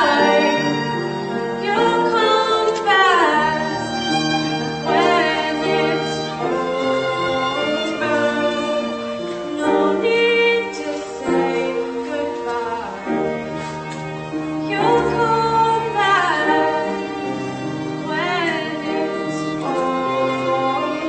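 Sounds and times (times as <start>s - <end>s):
bowed strings: 0.0s - 21.0s.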